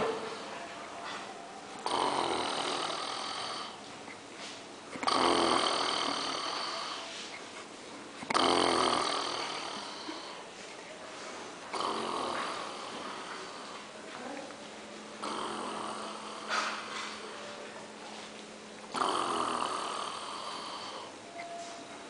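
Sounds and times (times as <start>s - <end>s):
man snoring loudly: 1.8s - 3.8s, 5.0s - 7.1s, 8.2s - 10.4s, 11.7s - 13.7s, 15.2s - 16.8s, 18.9s - 21.2s
quiet breathing: 1.8s - 14.0s, 15.2s - 17.4s, 18.0s - 21.6s.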